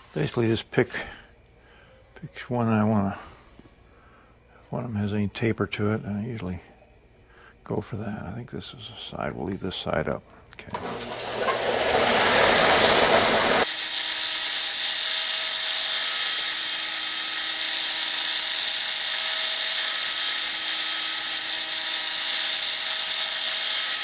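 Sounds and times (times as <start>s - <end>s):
electric belt sander sanding wood: 10.8s - 24.0s.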